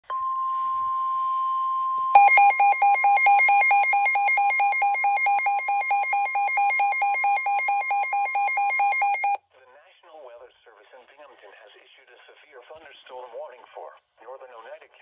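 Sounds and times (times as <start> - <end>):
steady high warning tone: 0.1 - 9.4
pulsing electronic alarm: 1.5 - 9.4.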